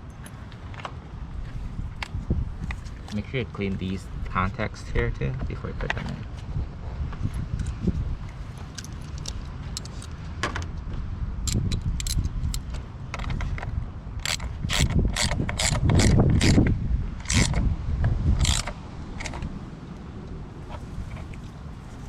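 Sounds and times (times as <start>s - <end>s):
ratchet wrench clicking: 8.8s - 10.2s, 11.5s - 12.7s, 18.4s - 18.7s.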